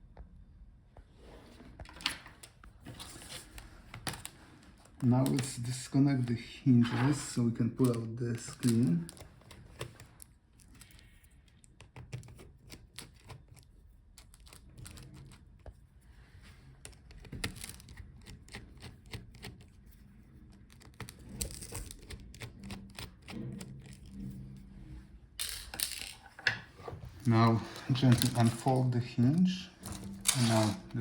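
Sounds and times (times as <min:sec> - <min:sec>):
tools and metal parts clicking: 0:25.4 - 0:26.6.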